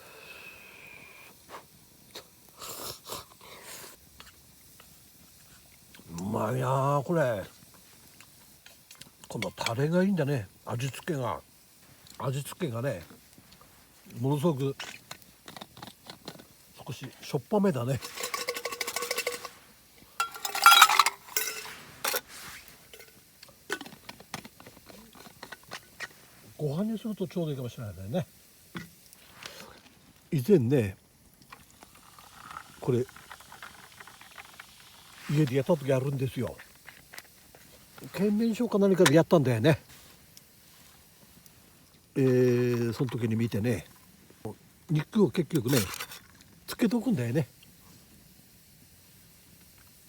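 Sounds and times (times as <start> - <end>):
utensils scraping a dish: 18.0 - 19.6, 20.2 - 22.3.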